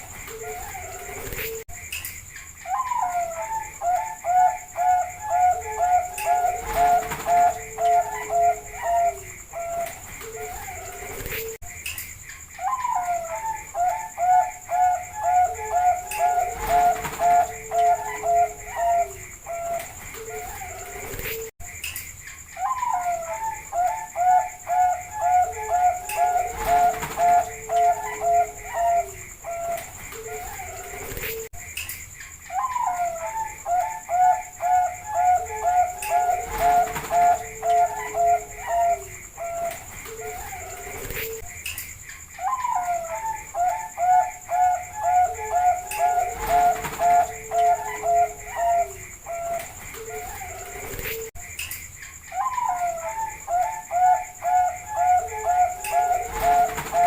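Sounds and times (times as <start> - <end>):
dove cooing: 0.0 - 1.6, 2.6 - 11.6, 12.6 - 21.5, 22.6 - 31.5, 32.5 - 41.5, 42.4 - 51.3, 52.3 - 57.0.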